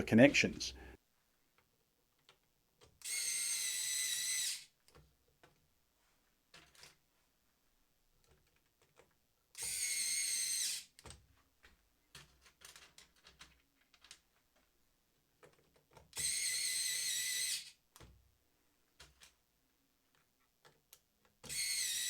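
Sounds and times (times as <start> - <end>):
cordless screwdriver motor whining: 3.0 - 4.7, 9.6 - 10.9, 16.2 - 17.8, 21.5 - 22.0.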